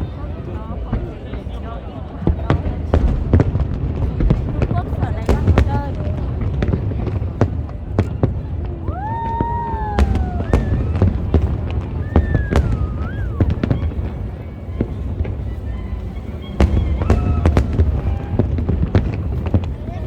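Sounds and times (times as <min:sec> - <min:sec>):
fireworks bangs: 0:00.8 - 0:20.0
gliding whistle tones: 0:09.3 - 0:14.2.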